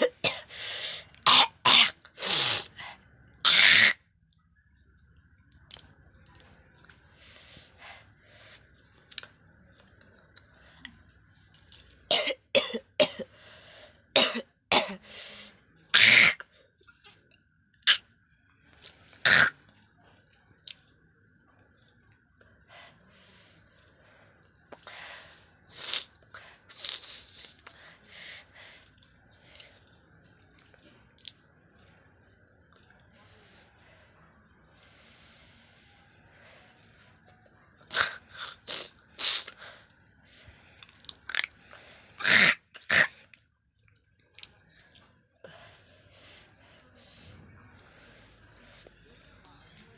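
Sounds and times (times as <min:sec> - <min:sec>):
person coughing: 0:01.3 - 0:02.6, 0:12.1 - 0:13.3, 0:14.2 - 0:15.0.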